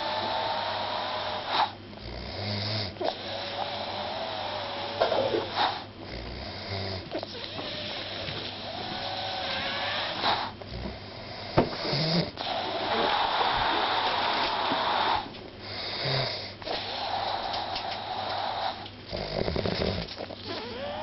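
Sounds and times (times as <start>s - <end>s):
person snoring: 15.8s - 21.0s.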